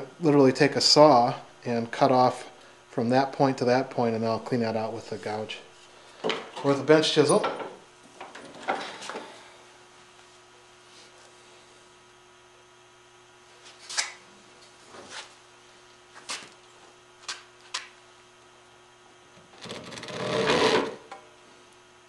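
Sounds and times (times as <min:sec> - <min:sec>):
steady low hum: 0:00.0 - 0:22.0
hand saw cutting wood: 0:19.6 - 0:21.1.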